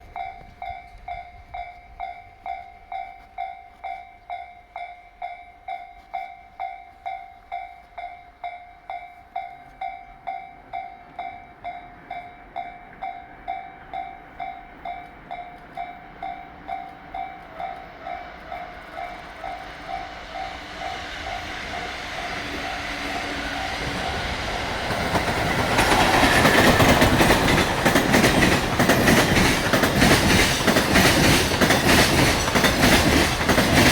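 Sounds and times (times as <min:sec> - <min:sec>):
train rumble: 0:06.9 - 0:33.9
rail-joint clatter: 0:14.8 - 0:33.9.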